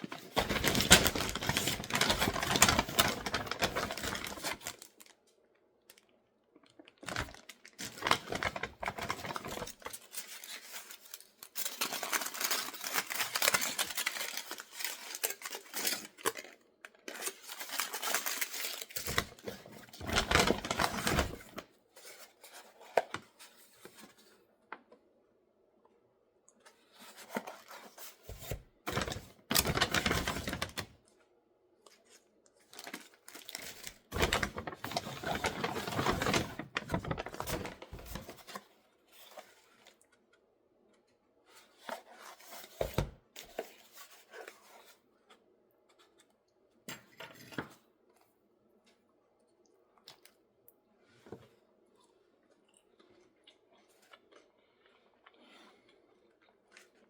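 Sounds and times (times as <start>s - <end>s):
packaging crinkling and tearing: 0.0s - 5.3s, 5.9s - 23.2s, 27.0s - 31.0s, 32.6s - 40.0s.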